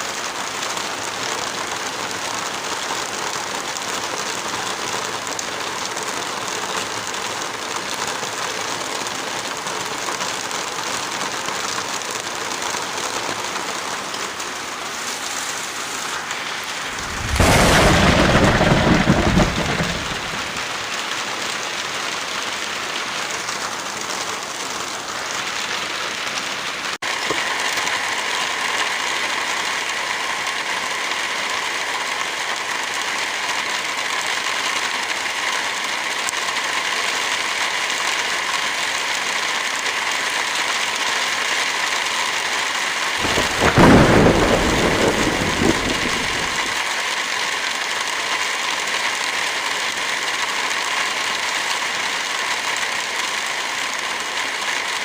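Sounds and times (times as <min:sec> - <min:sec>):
heavy rain hissing: 0:00.0 - 0:55.0
thunder clap rumbling: 0:16.8 - 0:20.9, 0:43.2 - 0:46.8.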